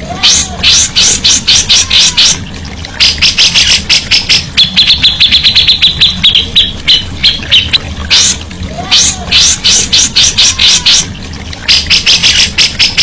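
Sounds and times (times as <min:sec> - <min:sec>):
low steady hum: 0:00.0 - 0:13.0
songbird singing trills: 0:03.0 - 0:08.4.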